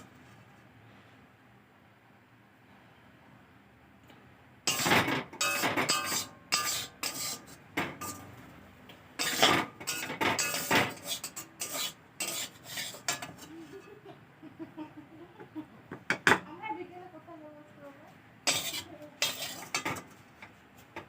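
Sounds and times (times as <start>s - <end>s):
metal utensils scraping a pot: 4.7s - 8.3s, 9.2s - 13.8s, 18.5s - 20.5s.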